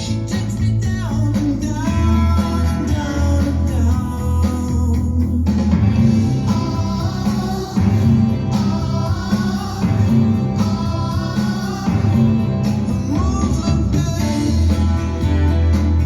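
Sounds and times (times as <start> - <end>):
song with guitar and singing: 0.0 - 16.0.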